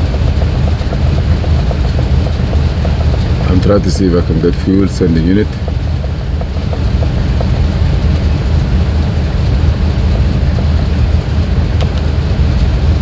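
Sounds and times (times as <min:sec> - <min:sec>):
car engine running with misfire: 0:00.0 - 0:13.0
faint clicks: 0:11.8 - 0:12.1.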